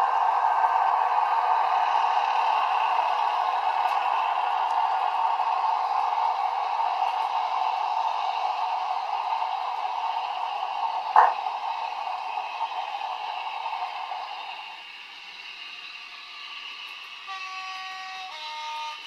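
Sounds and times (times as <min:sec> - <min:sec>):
diesel engine running through speaker: 0:00.0 - 0:19.0
locomotive horn: 0:17.3 - 0:19.0.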